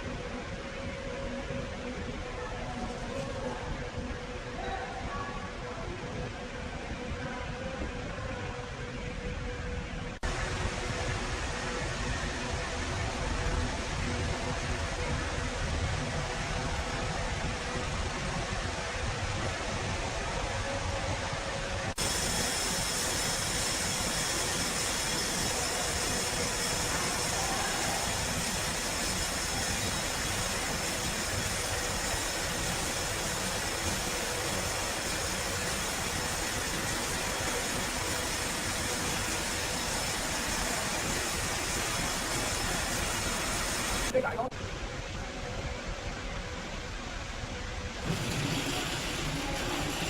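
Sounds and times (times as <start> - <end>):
sawmill machinery running: 21.9 - 44.2, 47.8 - 50.0.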